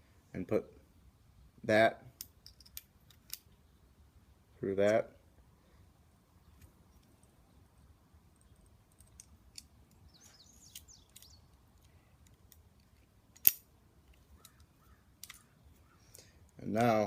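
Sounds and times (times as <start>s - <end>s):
small metal parts clicking: 2.2s - 3.5s, 8.4s - 15.5s
sharp metallic click: 13.4s - 13.7s.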